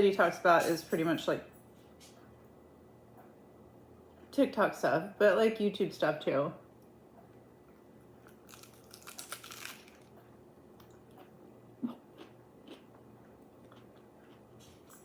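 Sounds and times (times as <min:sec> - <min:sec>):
lettuce crunching: 0:08.2 - 0:10.2
chewing with mouth clicks: 0:08.2 - 0:15.0.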